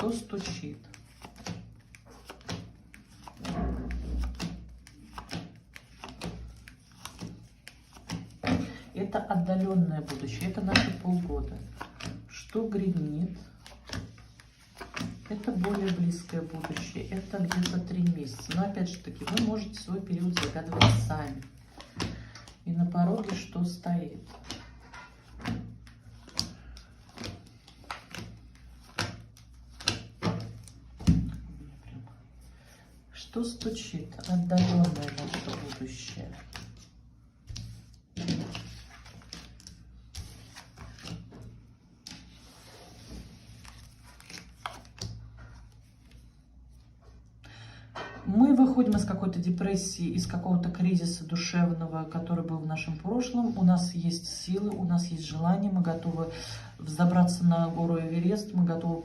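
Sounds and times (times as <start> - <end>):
cards shuffling and clicking: 0.0 - 31.4, 33.4 - 46.2.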